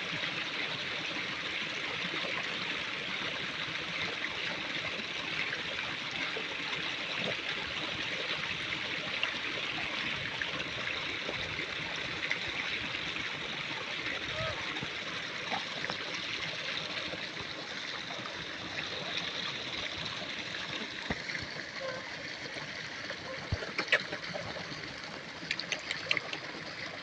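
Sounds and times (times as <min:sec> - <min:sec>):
running water rushing: 0:00.0 - 0:27.0.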